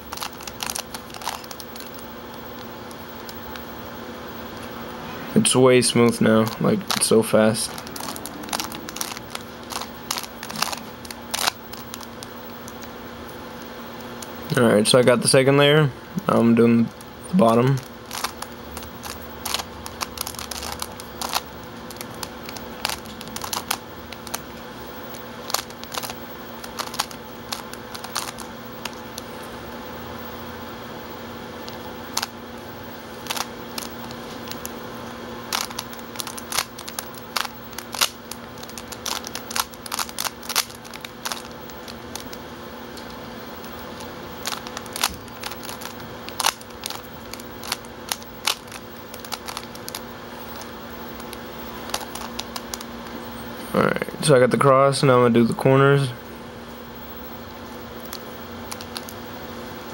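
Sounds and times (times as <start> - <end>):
puzzle cube layers clicking: 0.0 - 1.9, 6.4 - 12.9, 18.1 - 24.4, 25.1 - 29.2, 33.2 - 34.7, 35.5 - 42.4, 44.4 - 52.8.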